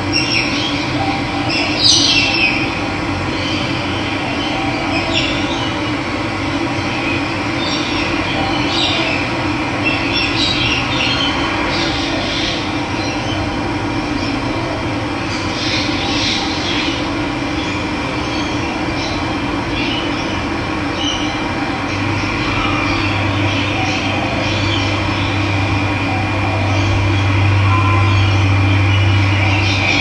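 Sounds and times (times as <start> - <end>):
birds chirping: 0.1 - 2.7.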